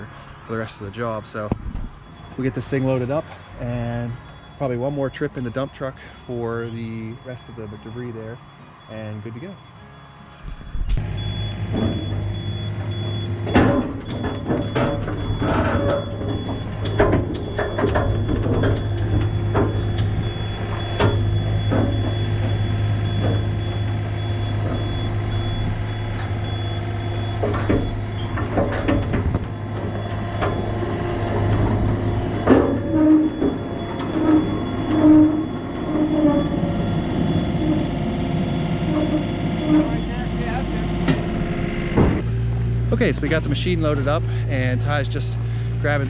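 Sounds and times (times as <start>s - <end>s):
diesel engine running: 0.0s - 46.0s
beeping tone: 0.6s - 41.8s
metal clanks and knocks: 11.7s - 23.8s, 27.2s - 36.8s.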